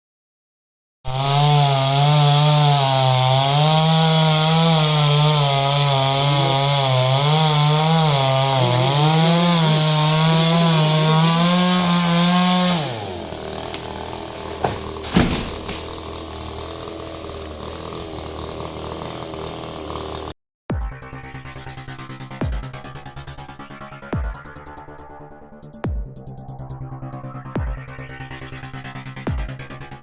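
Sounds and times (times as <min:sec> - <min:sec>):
chainsaw cutting wood: 0:01.1 - 0:20.4, 0:21.4 - 0:23.4, 0:28.4 - 0:30.0.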